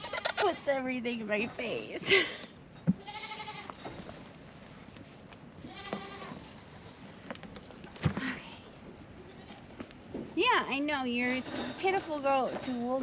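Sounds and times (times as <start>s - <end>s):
goats bleating: 0.0s - 0.7s, 3.0s - 3.8s, 5.7s - 7.0s.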